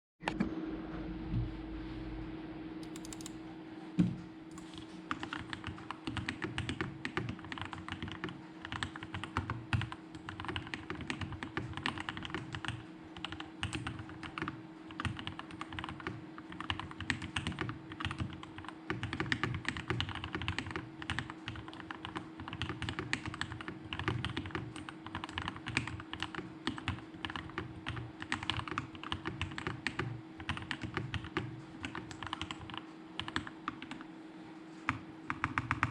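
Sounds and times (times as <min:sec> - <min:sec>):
fast mechanical keyboard typing: 0:02.8 - 0:03.4, 0:04.5 - 0:34.0, 0:34.9 - 0:35.9.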